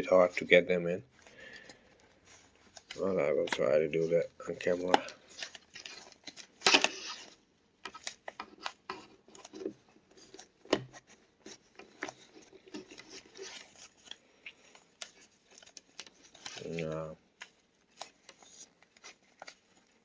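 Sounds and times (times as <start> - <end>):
plastic clicks and scrapes: 4.6 - 20.0.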